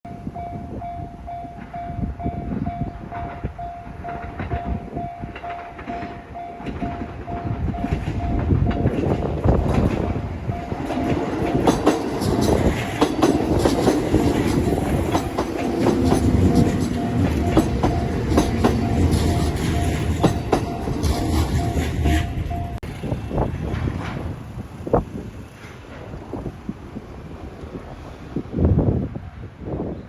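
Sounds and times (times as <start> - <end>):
train rumble: 0.1 - 29.9
wheels clacking over rail joints: 3.1 - 28.0
level crossing bell ringing: 16.4 - 22.8.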